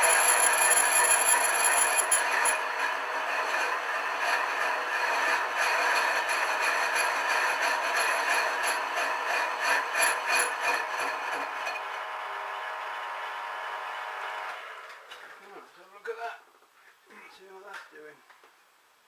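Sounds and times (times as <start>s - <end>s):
lathe tool scraping metal: 0.0s - 11.9s
lathe machine whine: 0.0s - 14.8s.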